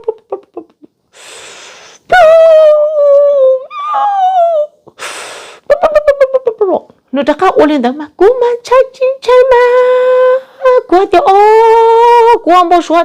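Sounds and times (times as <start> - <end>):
breathy hiss: 1.1 - 2.1, 4.9 - 5.7.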